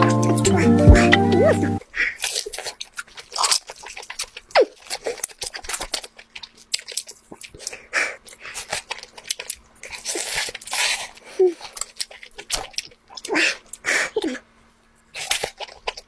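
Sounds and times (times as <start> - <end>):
wet chewing: 0.0 - 14.4, 15.0 - 16.0
lobster shell cracking: 2.2 - 7.9, 8.6 - 10.8.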